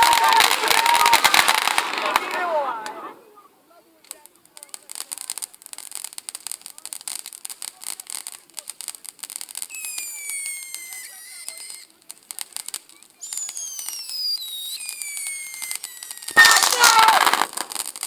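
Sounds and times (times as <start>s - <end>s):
fireworks crackling: 0.0s - 18.0s
whistling fireworks: 0.0s - 18.0s.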